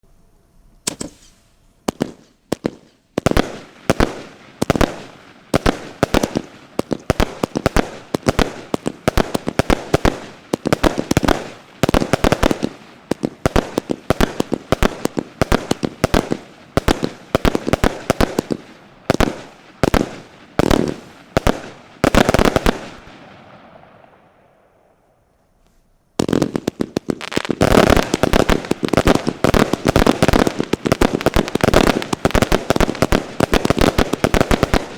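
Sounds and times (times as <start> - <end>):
fireworks bangs: 0.8 - 25.0, 26.2 - 34.9.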